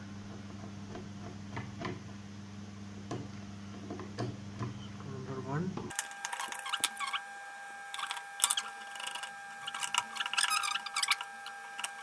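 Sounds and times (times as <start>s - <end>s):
faint steady whine: 0.0s - 12.0s
screwdriver clicks and squeaks: 8.0s - 12.0s.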